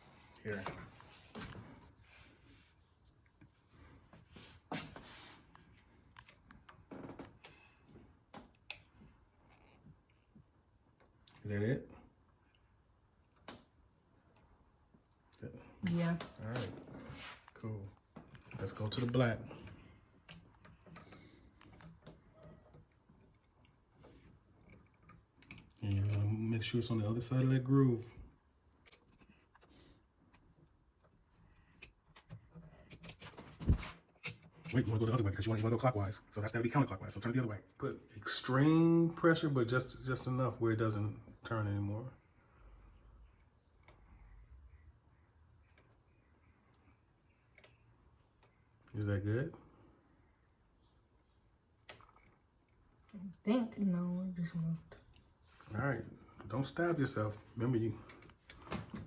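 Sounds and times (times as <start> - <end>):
faint clicks of small parts: 18.2 - 26.4.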